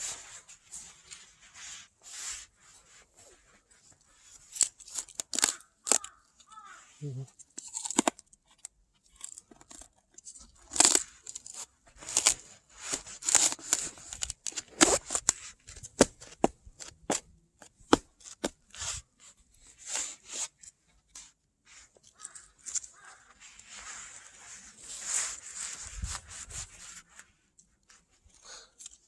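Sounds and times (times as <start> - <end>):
ice crunching: 4.4 - 6.8, 9.2 - 17.2.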